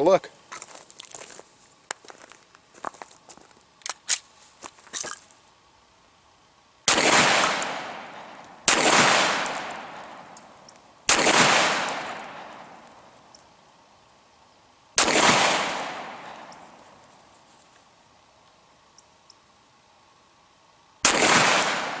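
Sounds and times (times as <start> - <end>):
gunshots with echo: 6.9 - 10.3, 11.1 - 12.8, 15.0 - 16.6, 21.0 - 22.0.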